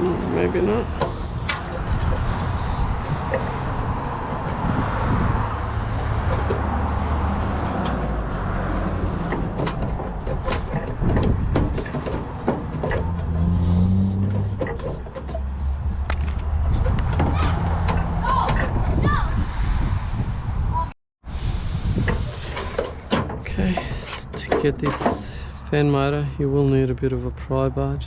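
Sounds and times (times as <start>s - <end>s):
road traffic rumble: 0.0s - 28.0s
hand tools tapping metal: 1.0s - 2.5s.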